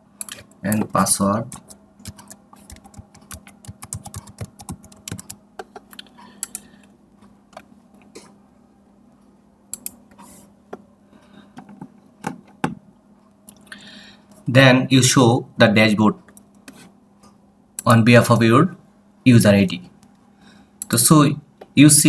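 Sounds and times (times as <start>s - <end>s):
computer keyboard typing: 1.6s - 6.6s.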